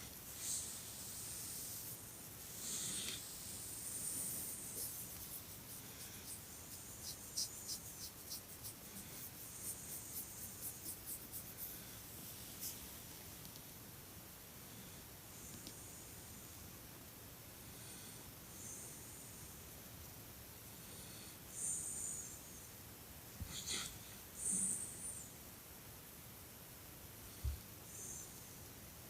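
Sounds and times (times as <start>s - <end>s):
faint irregular ticks: 0.0s - 13.7s, 15.4s - 16.1s.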